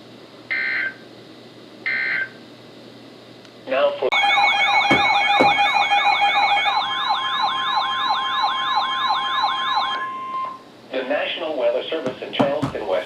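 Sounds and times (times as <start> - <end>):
electronic siren yelping: 4.2 - 10.6
short thumps: 4.9 - 5.8, 12.0 - 13.0.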